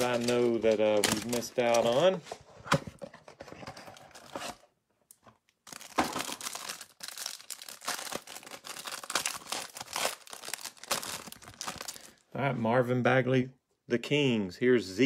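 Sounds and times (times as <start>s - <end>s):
card packaging tearing and crinkling: 0.0s - 2.2s, 5.6s - 12.2s.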